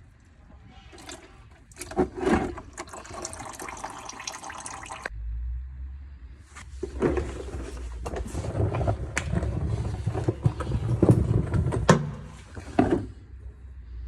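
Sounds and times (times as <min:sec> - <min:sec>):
knocks and clanks: 0:06.8 - 0:13.2.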